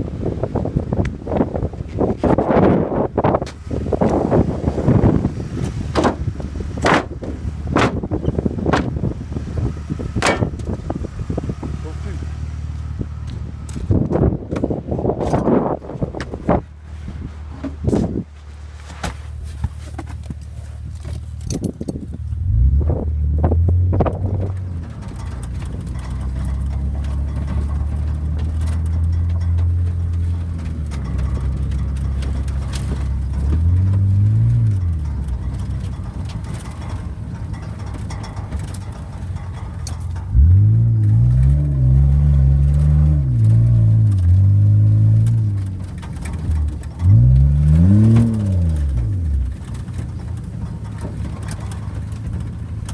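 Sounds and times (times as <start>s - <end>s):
car engine idling and revving: 0.0s - 52.9s
knocks: 8.7s - 9.0s.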